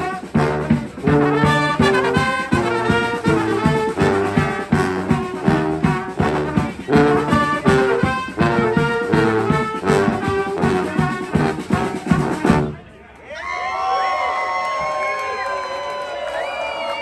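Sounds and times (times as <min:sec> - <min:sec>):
brass band playing: 0:00.0 - 0:12.9.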